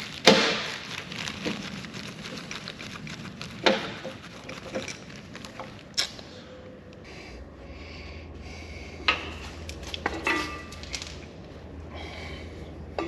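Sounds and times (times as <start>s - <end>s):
low steady hum: 0.0s - 13.0s.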